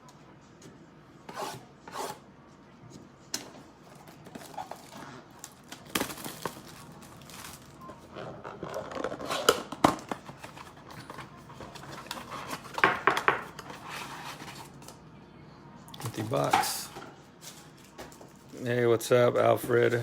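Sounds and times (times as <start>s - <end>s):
wrappers crinkling and tearing: 3.9s - 9.8s.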